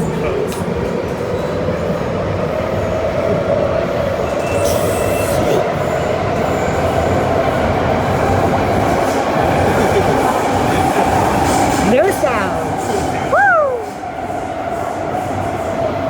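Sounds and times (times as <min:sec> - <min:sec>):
train traction whine: 0:00.0 - 0:16.0
wheels rumbling on rail: 0:00.0 - 0:16.0.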